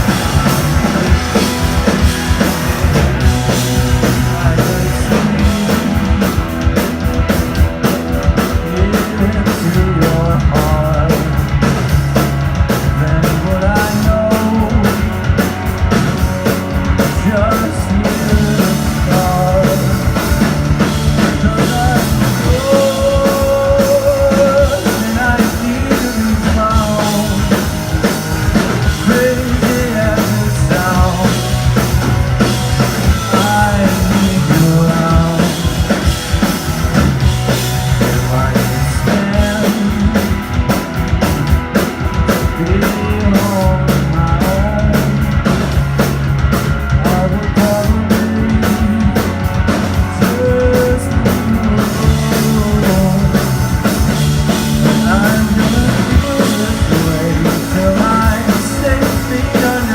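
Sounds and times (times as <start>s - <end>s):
rock band playing live: 0.0s - 59.9s.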